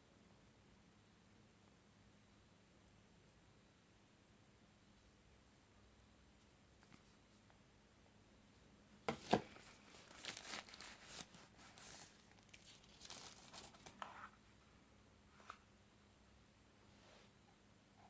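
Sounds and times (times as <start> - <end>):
packaging rustling: 9.1 - 14.4
packaging crinkling and tearing: 9.2 - 14.1.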